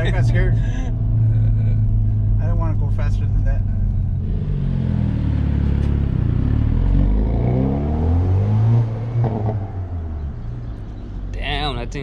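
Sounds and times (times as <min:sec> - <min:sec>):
exhaust crackle: 0:00.0 - 0:07.2
car engine revving: 0:00.0 - 0:12.0.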